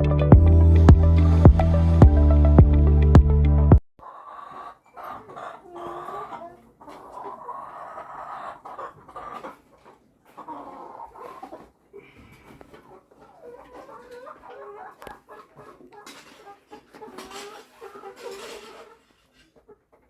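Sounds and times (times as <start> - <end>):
music track: 0.0 - 3.8
hens clucking: 4.0 - 20.0.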